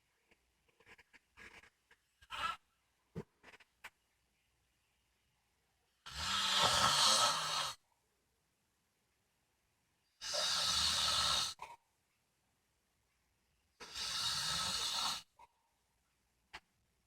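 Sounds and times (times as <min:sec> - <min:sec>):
woman snoring: 0:06.1 - 0:07.8, 0:10.2 - 0:11.6, 0:13.8 - 0:15.3.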